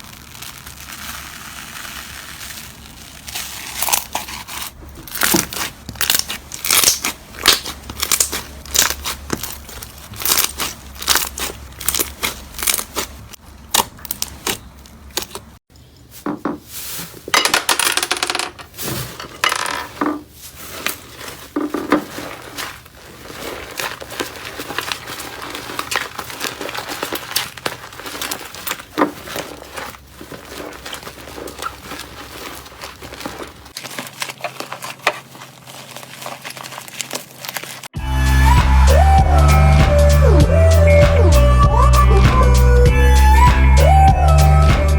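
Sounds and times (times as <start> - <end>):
slime sticky pops and crackles: 5.2 - 9.6.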